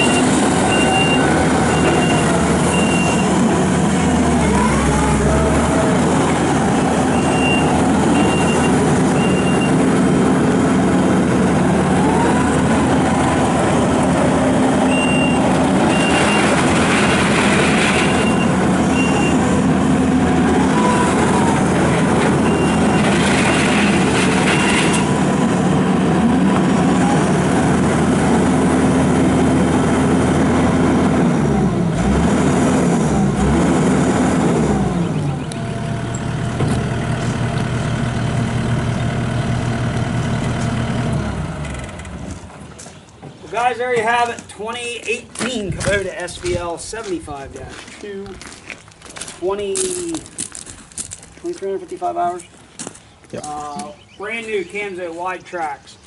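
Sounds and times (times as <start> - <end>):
backup alarm beeping: 0.0 - 3.4, 7.1 - 9.8, 14.9 - 16.5, 18.1 - 19.4, 22.4 - 23.0
diesel engine running: 0.0 - 55.4.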